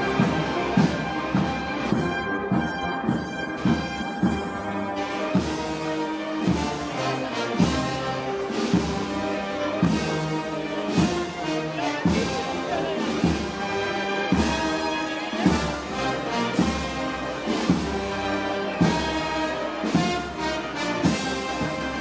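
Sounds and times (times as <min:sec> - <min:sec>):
brass playing slow march: 0:00.0 - 0:22.0
heavy drum strokes: 0:00.0 - 0:22.0.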